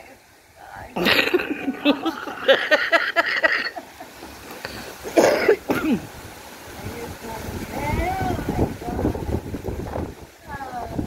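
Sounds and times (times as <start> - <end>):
women laughing: 1.0 - 4.8.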